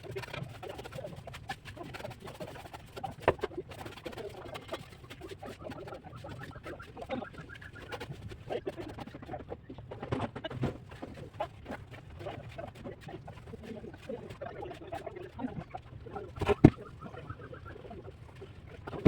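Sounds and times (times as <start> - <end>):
short sharp taps and scrapes: 0.0 - 19.0
birds calling: 5.4 - 8.5, 16.1 - 18.9.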